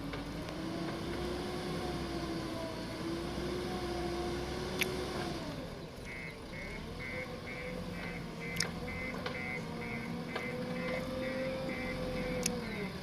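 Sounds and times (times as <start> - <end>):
diesel engine running: 0.0 - 13.0
reversing alarm beeping: 6.0 - 13.0.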